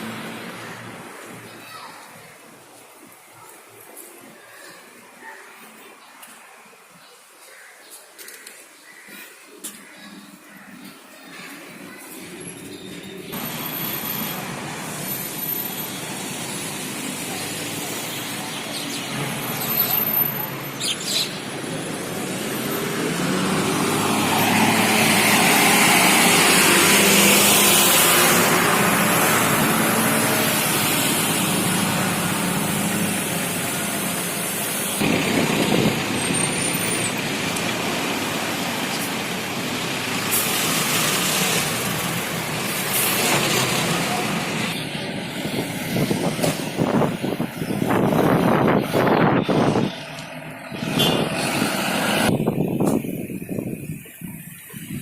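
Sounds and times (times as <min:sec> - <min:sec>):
road traffic: 0:00.0 - 0:55.0
vehicle passing loudly: 0:21.5 - 0:52.8.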